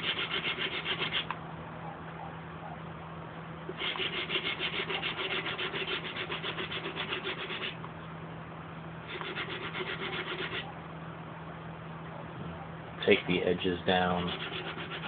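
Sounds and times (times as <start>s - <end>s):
sandpaper rubbing on filler: 0.0s - 1.3s, 3.7s - 7.8s, 9.1s - 10.7s, 14.1s - 15.0s.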